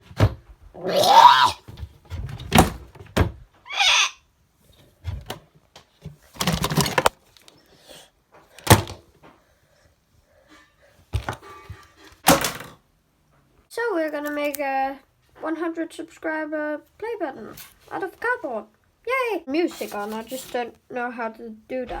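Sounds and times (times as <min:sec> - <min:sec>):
rustling or scraping: 0:10.4 - 0:12.2, 0:17.4 - 0:18.2, 0:19.6 - 0:20.7.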